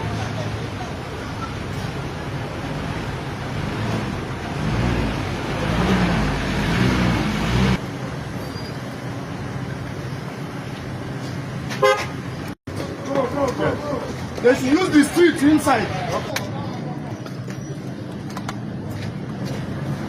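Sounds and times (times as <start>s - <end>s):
motor vehicle engine: 0.0s - 15.1s
traffic noise: 0.0s - 20.0s.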